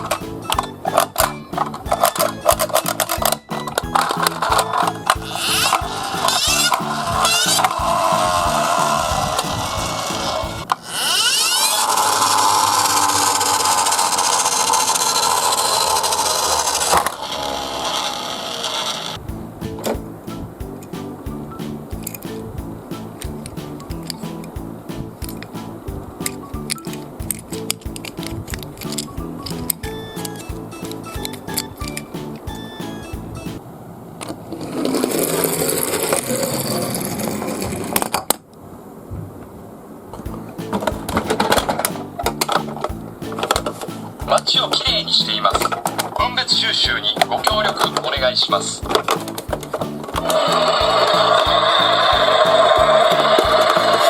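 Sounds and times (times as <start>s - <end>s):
toy truck rattling down a slope: 0.0s - 19.2s, 34.5s - 38.4s, 50.2s - 54.0s
sharp clacks: 40.2s - 54.0s.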